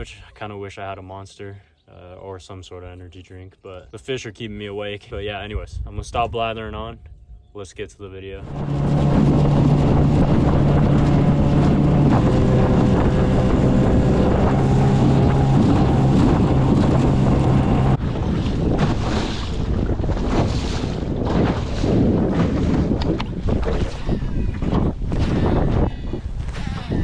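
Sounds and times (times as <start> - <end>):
wind buffeting microphone: 5.1 - 7.6, 8.3 - 27.0
water: 8.2 - 27.0
outboard motor running: 8.4 - 26.9.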